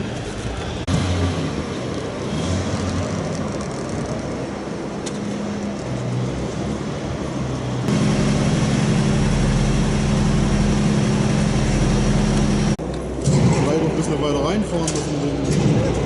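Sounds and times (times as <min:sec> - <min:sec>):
car engine idling: 0:07.9 - 0:12.8.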